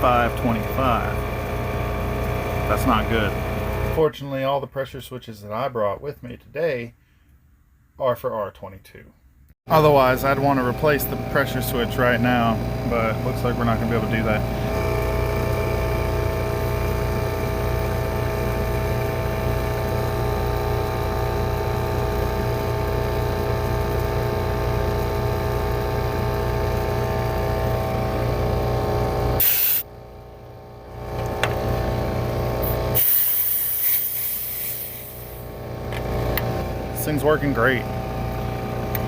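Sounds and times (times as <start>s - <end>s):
heat pump hum: 0.0s - 4.0s, 9.7s - 39.0s
burst of hiss: 29.4s - 29.8s, 33.0s - 35.4s.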